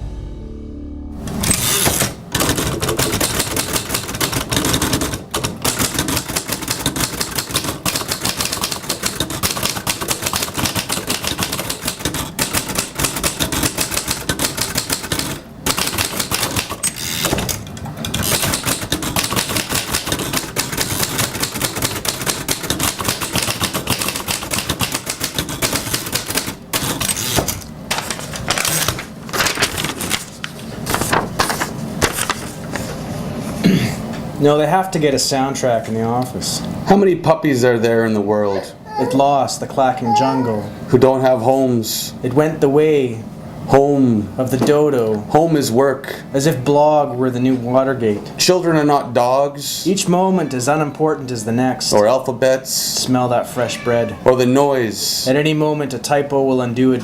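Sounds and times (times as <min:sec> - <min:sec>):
typewriters clattering: 0:01.3 - 0:32.9.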